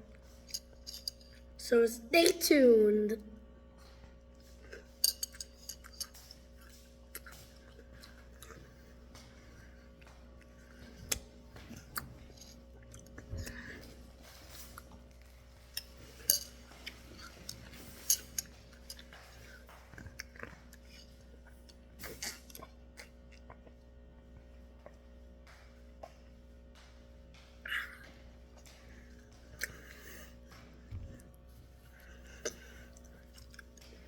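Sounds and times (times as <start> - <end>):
chewing crunchy cereal: 4.3 - 25.0, 27.9 - 30.5, 31.8 - 34.0.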